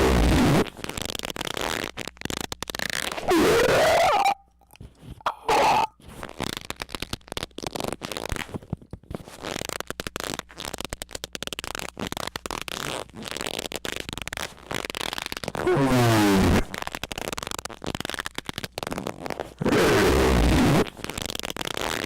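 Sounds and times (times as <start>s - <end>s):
rapid crackling clicks: 0.6s - 4.4s
loud distorted squeaks: 3.0s - 4.4s, 5.3s - 5.9s.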